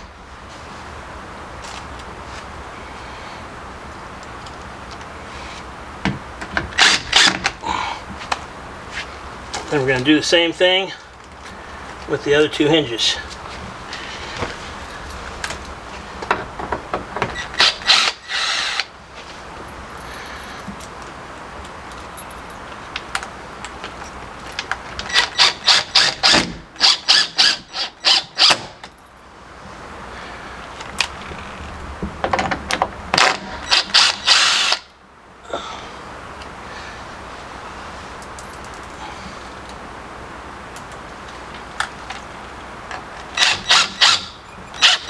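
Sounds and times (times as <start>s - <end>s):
screws being driven clicking: 43.4s - 45.0s.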